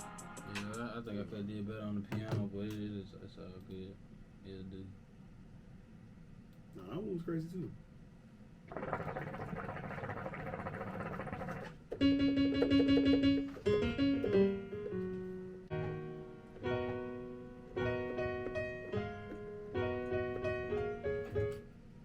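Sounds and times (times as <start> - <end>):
produced beat: 0.0 - 0.9, 12.5 - 13.5
electric piano chords: 12.0 - 21.7.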